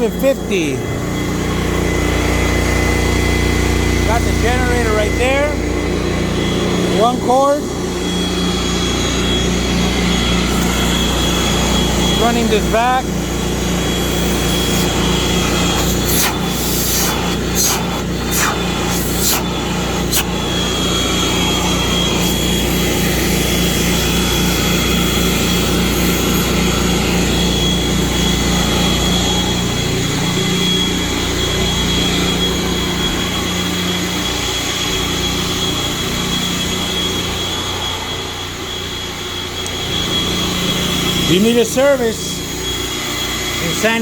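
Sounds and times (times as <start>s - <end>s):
generator engine drone: 0.0s - 44.0s
thin high whine: 8.8s - 23.3s.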